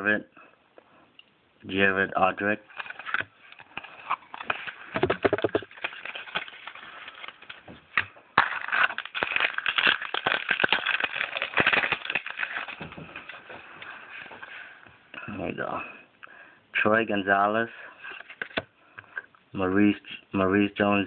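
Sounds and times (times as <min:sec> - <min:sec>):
wrapper tearing open: 0:02.7 - 0:13.6
cards shuffled: 0:02.7 - 0:14.6, 0:18.1 - 0:18.7
foil wrapper crinkling: 0:02.7 - 0:14.7.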